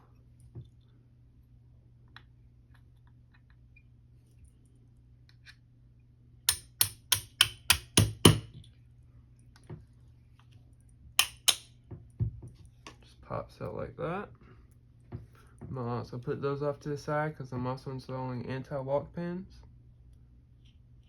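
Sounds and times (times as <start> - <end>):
sharp metallic taps: 6.5 - 8.5, 11.2 - 11.7.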